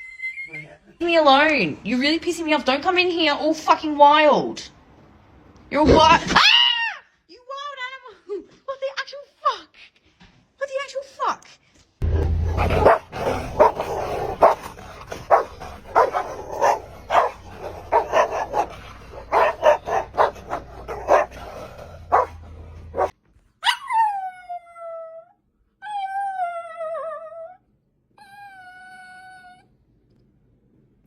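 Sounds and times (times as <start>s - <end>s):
dog barking and yipping: 12.6s - 24.0s
dog howling: 12.8s - 23.1s.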